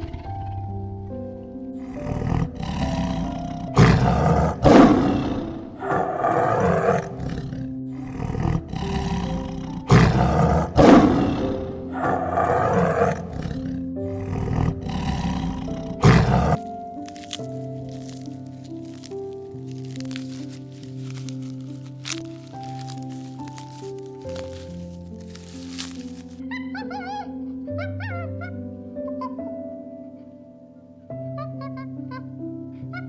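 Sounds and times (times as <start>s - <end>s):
background music: 0.0s - 33.0s
large animal calling roughly: 1.8s - 16.6s.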